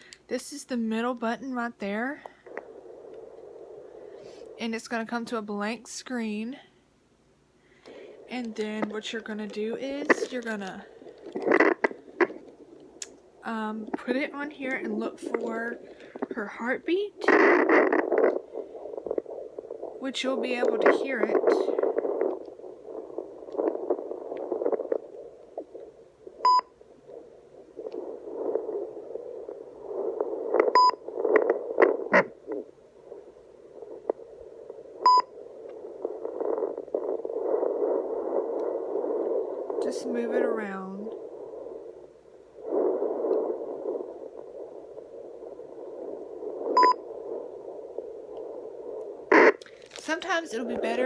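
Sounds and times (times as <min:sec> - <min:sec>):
doppler static and crackling: 0:00.0 - 0:51.0
short beeps: 0:46.8 - 0:47.0.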